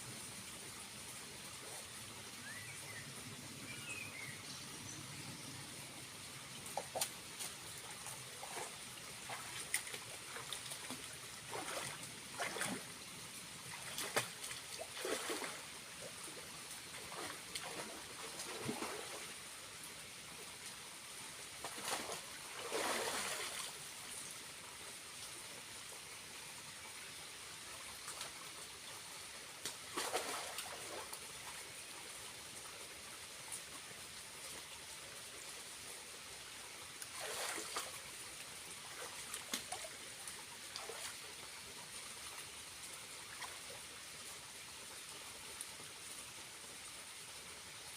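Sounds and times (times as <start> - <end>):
small waterfall trickling: 0.0 - 47.9
water splashes: 6.6 - 19.4, 21.6 - 24.0, 29.6 - 31.6, 37.0 - 42.4.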